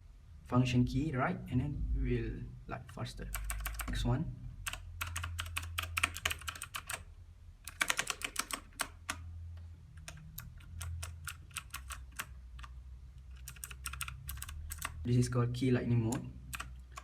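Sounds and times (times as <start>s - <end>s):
steady low hum: 0.0s - 17.0s
mechanical keyboard keystrokes: 3.4s - 4.0s, 4.7s - 7.0s, 7.6s - 9.2s, 10.0s - 15.0s, 16.1s - 17.0s.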